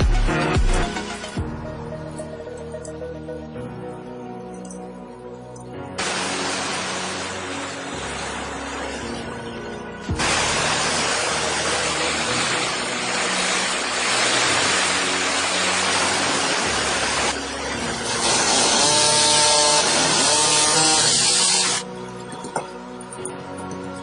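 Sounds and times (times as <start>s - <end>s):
background music: 0.0s - 24.0s
power tool running: 6.0s - 9.3s, 10.0s - 21.9s.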